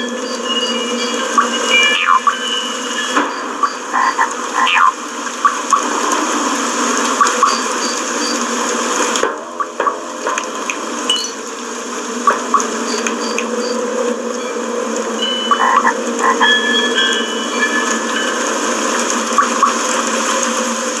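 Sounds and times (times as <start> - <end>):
water pouring and splashing: 1.0 - 21.0
short high bleeps: 12.9 - 13.7.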